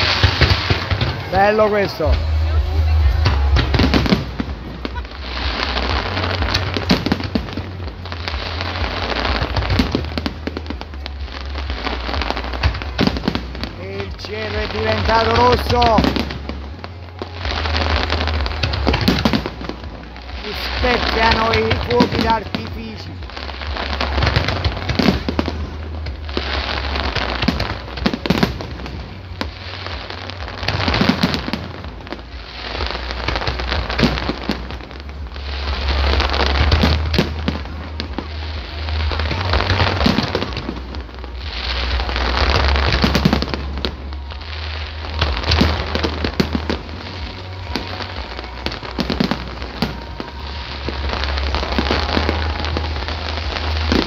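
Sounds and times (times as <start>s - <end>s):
fireworks bursting: 0.0s - 54.0s
fireworks crackling: 0.0s - 54.0s
low rumble: 0.0s - 54.0s.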